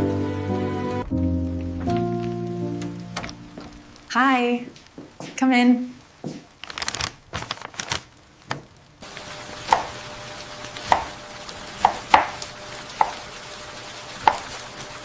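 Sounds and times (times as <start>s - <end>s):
soft knocks and rustles: 4.7s - 5.4s, 6.2s - 6.5s
knife chopping on cutting board: 9.7s - 10.0s, 10.8s - 11.2s, 11.8s - 12.4s, 13.0s - 13.2s, 14.2s - 14.5s.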